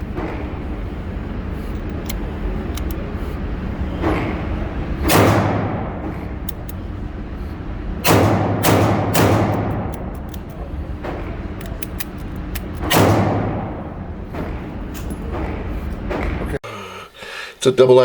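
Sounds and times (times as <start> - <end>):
revolver shots with echo: 2.2 - 16.4.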